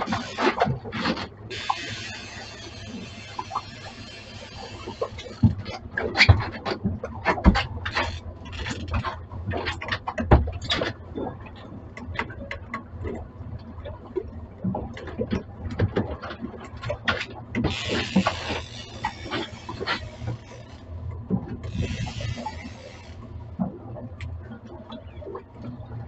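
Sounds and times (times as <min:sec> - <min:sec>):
low rumble: 0:16.8 - 0:26.0.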